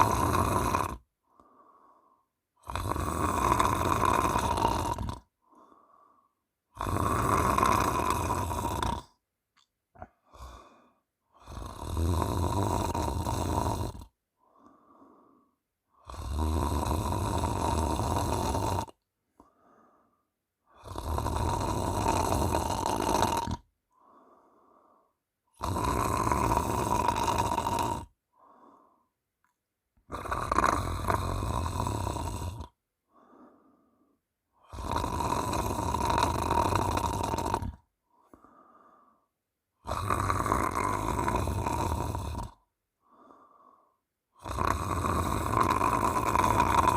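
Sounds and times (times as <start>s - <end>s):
woman snoring loudly: 0.0s - 1.1s, 2.6s - 5.8s, 6.7s - 9.2s, 10.0s - 14.2s, 15.9s - 19.0s, 20.7s - 24.3s, 25.5s - 28.8s, 30.0s - 33.5s, 34.6s - 38.4s, 39.8s - 43.5s, 44.3s - 46.9s
faint breaths: 1.0s - 2.6s, 5.2s - 6.8s, 10.0s - 11.6s, 14.3s - 16.4s, 18.9s - 20.9s, 23.9s - 25.3s, 28.1s - 30.1s, 32.4s - 35.0s, 38.0s - 39.4s, 41.3s - 44.1s.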